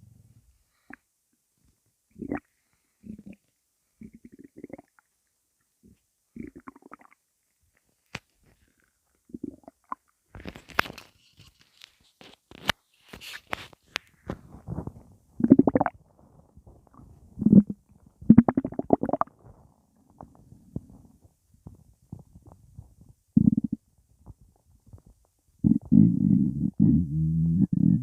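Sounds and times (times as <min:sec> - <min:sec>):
stomach gurgling and rumbling: 0:02.1 - 0:05.0, 0:05.8 - 0:07.2, 0:08.4 - 0:11.1, 0:13.9 - 0:28.0.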